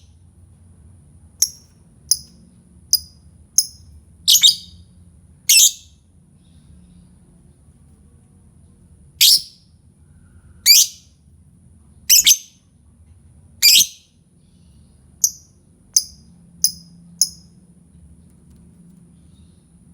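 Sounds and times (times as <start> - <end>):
lovebird shrill calls: 2.9 - 4.8, 5.5 - 5.9, 9.2 - 9.5, 10.7 - 11.0, 12.1 - 12.5, 13.6 - 14.0
short thin bird chirps: 3.0 - 4.8, 10.7 - 11.0, 12.1 - 12.5.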